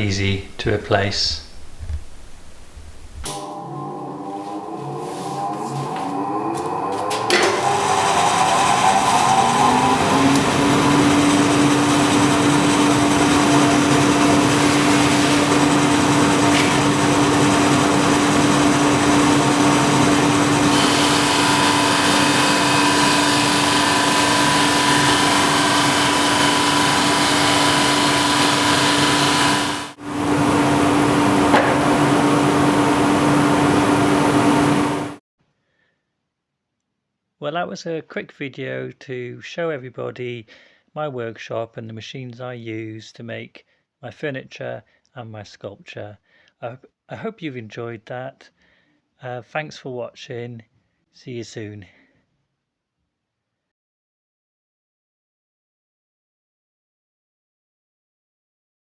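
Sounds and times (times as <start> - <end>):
drum sander running: 1.6 - 35.2.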